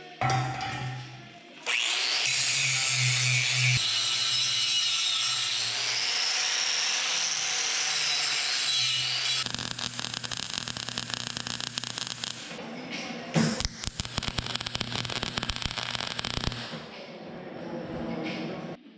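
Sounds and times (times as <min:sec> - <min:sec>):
power tool working on metal: 0:01.7 - 0:12.6, 0:13.6 - 0:16.8.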